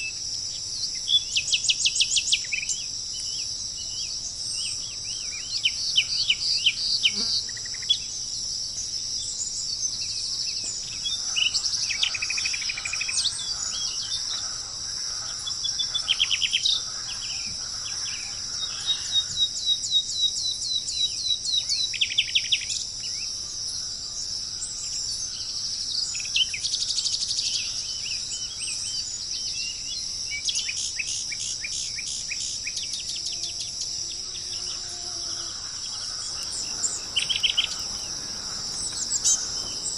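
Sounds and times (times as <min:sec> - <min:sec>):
songbirds singing: 0:00.0 - 0:39.9
high-pitched insect drone: 0:33.1 - 0:39.9.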